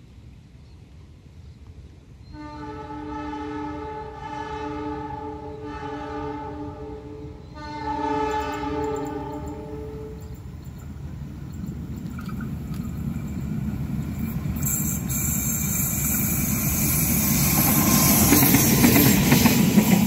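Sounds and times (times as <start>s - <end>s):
train air horn: 2.3s - 10.3s.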